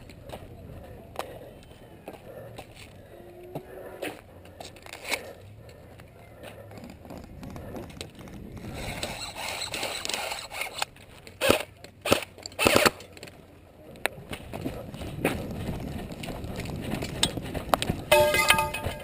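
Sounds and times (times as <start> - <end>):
airsoft guns firing: 11.4 - 13.0.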